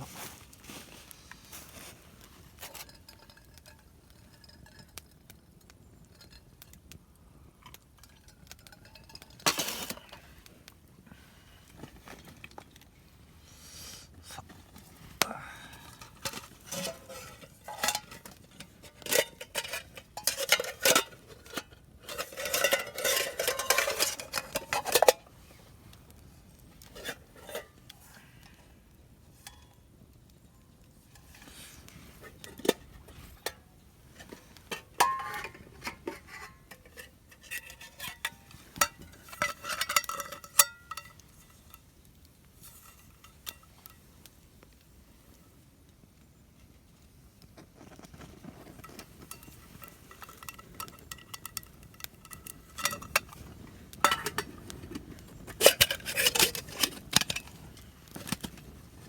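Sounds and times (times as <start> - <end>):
dishes and utensils clinking: 16.0 - 25.2, 27.0 - 27.8, 34.2 - 41.2, 49.3 - 53.4, 54.0 - 54.5, 55.5 - 57.5.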